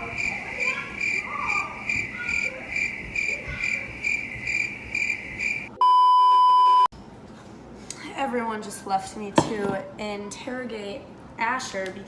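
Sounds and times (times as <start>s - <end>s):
cricket chirping: 0.1s - 5.7s.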